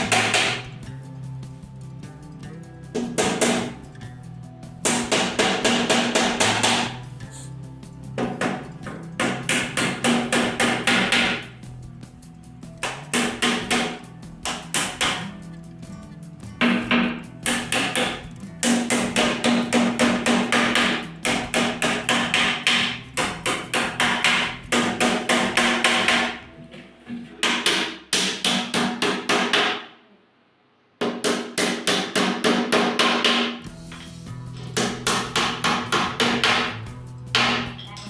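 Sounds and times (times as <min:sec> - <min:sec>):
hammer driving nails into wood: 0:00.0 - 0:00.7, 0:04.9 - 0:07.0, 0:12.8 - 0:15.3, 0:16.6 - 0:26.4.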